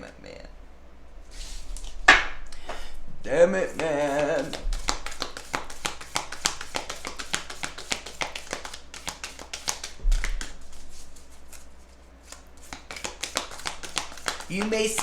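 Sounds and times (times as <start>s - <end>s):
cards shuffling clicks: 3.7s - 10.6s, 11.2s - 15.0s
dull thump: 10.0s - 10.7s.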